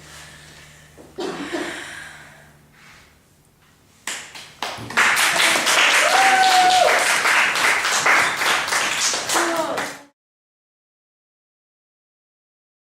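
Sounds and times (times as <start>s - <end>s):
audience applause: 4.6s - 10.1s.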